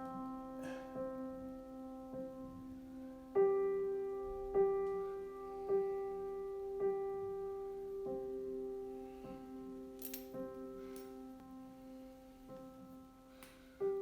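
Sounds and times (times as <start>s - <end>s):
slow piano music: 0.0s - 14.0s.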